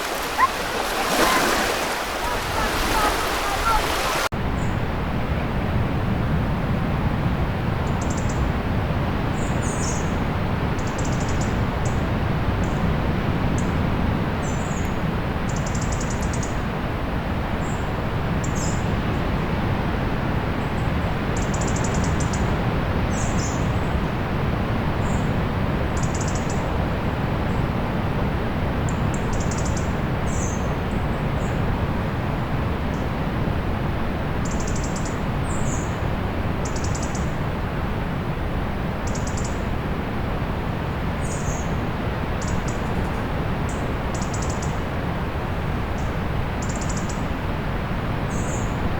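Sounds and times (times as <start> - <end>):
small birds chirping: 0.0 - 4.3
surf washing on beach: 0.0 - 4.3.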